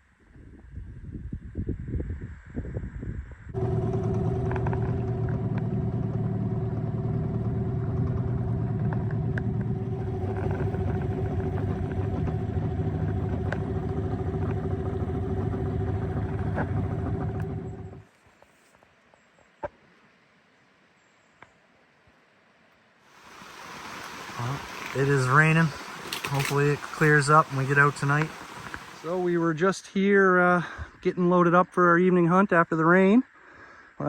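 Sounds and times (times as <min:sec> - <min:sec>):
outboard motor running: 0:03.6 - 0:18.1, 0:23.2 - 0:29.4.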